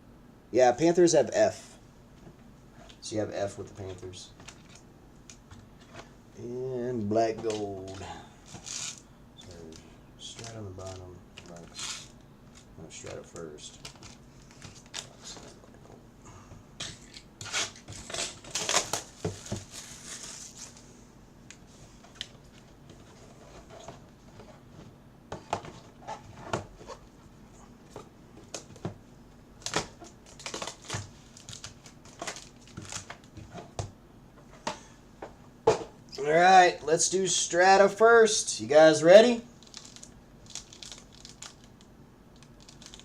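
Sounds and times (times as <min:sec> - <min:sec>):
plastic wrap crinkling: 0:17.7 - 0:20.9, 0:29.6 - 0:33.3, 0:39.6 - 0:43.0.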